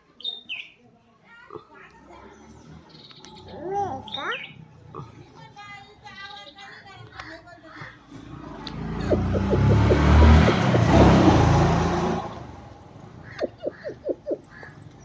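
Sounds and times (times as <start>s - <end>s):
motor vehicle passing: 8.0s - 15.0s.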